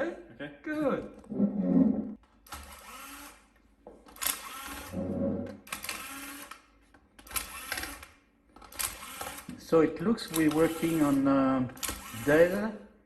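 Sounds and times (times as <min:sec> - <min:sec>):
small motor whirring: 0:02.5 - 0:03.4, 0:04.2 - 0:05.2.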